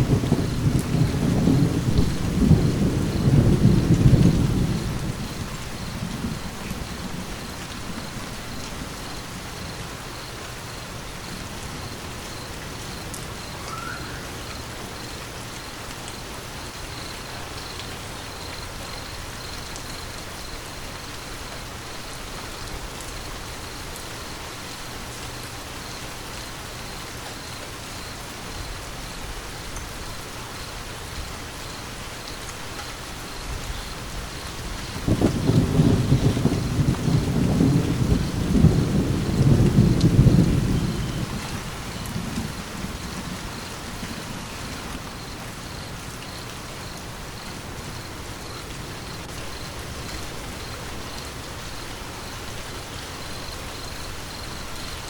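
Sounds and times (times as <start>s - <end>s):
thunder rumbling: 0.0s - 9.8s, 33.6s - 55.0s
steady rain falling: 0.0s - 55.0s.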